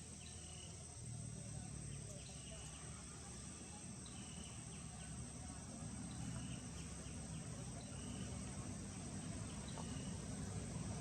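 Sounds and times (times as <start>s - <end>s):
faint chirps: 0.0s - 5.4s
insects trilling: 0.0s - 11.0s.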